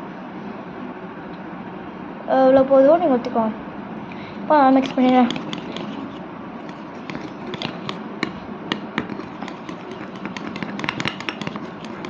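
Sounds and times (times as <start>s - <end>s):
slime being stirred in a bowl: 4.6s - 12.0s.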